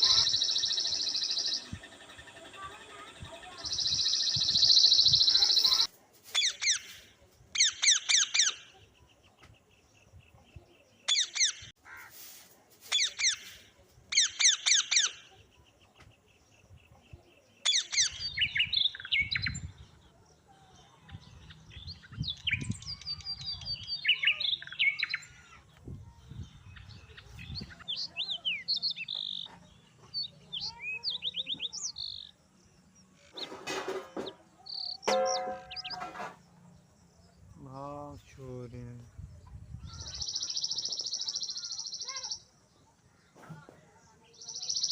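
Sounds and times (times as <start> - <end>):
birds singing and chirping: 0.0 - 12.0, 12.9 - 44.9.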